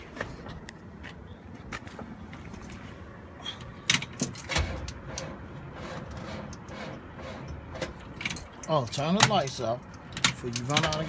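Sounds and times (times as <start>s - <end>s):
keys jangling at ignition: 8.0s - 11.0s.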